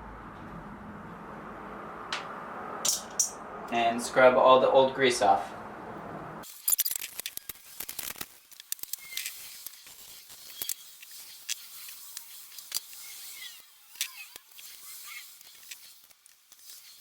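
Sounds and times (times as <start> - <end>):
scrubbing metal parts: 2.8 - 3.4, 6.4 - 17.0
metal pieces clicking together: 6.4 - 17.0.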